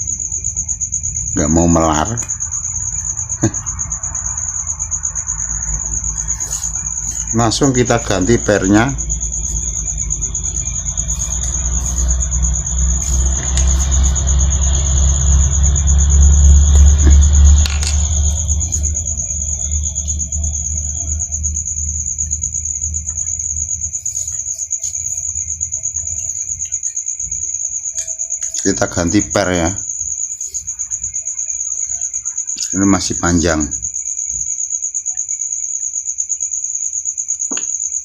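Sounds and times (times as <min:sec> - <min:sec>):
high-pitched cricket trill: 0:00.0 - 0:38.0
low rumble: 0:02.4 - 0:24.0.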